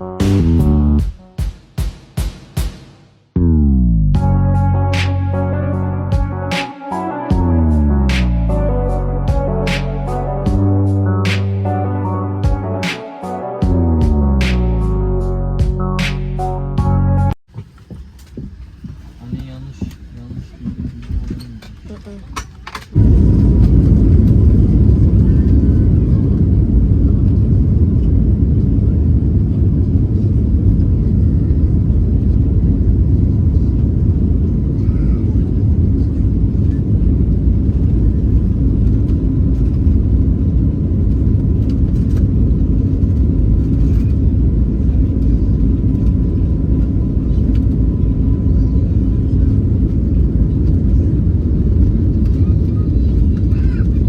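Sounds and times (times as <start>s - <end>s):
airliner cabin rumble: 16.8s - 54.0s.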